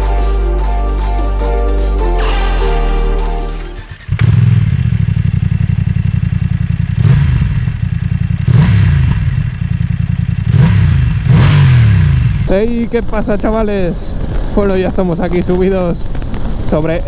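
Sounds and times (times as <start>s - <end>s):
motorcycle engine revving: 2.2s - 15.0s.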